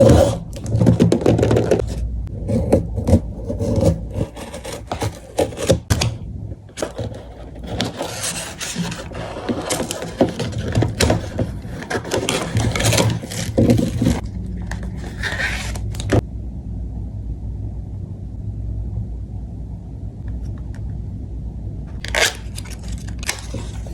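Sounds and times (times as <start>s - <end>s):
packaging scraping and clicking: 0.0s - 6.1s, 6.8s - 16.2s, 22.0s - 23.9s
low steady hum: 0.0s - 23.9s.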